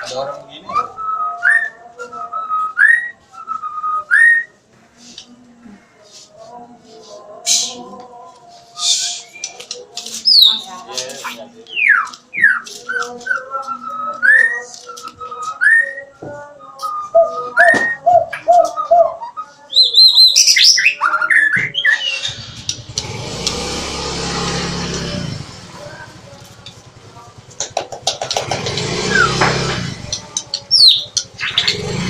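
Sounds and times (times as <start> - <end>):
bird whistled song: 0.7 - 4.6, 8.8 - 10.7, 11.7 - 22.8, 30.0 - 32.0
bird trill: 8.8 - 10.6, 17.2 - 23.1, 30.0 - 32.0.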